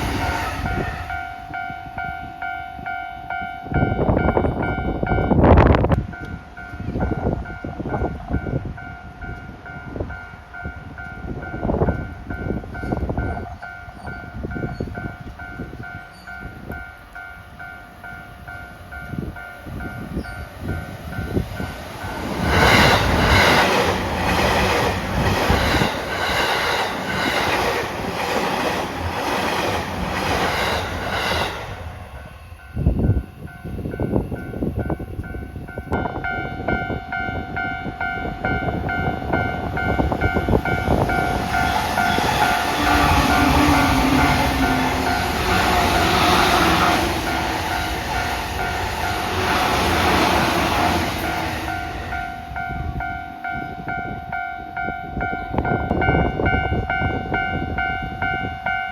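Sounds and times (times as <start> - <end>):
electric train rushing past: 0.0 - 58.9.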